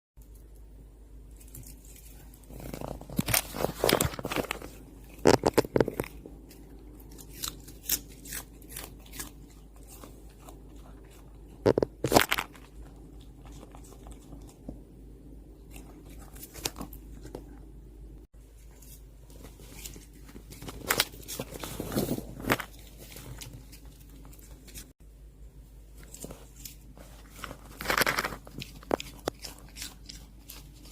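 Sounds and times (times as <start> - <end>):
dog crunching cabbage: 1.3 - 14.8, 15.6 - 17.6, 18.8 - 24.9, 26.0 - 30.9
dog chewing: 1.8 - 14.9, 26.1 - 30.9.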